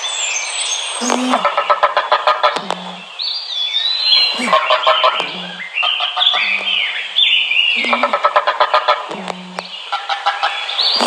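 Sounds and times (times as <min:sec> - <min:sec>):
bird-like chirping and chattering: 0:00.0 - 0:11.0
steady hiss: 0:00.0 - 0:11.0.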